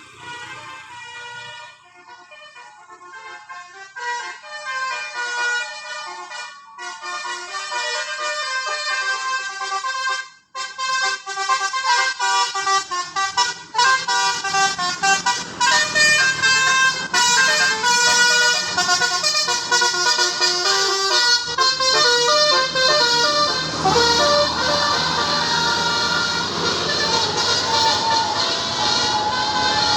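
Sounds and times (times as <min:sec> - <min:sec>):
musical air horn tune: 0:00.2 - 0:29.9
rushing noise: 0:21.8 - 0:29.9.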